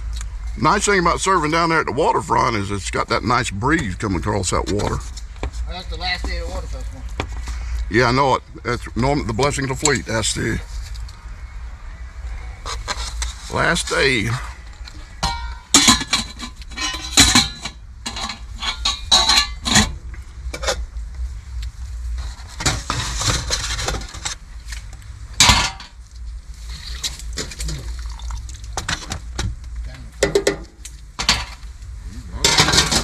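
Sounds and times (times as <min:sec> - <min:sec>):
dishes and utensils clinking: 0:14.8 - 0:20.8, 0:25.4 - 0:26.0, 0:30.2 - 0:31.7, 0:32.4 - 0:33.0.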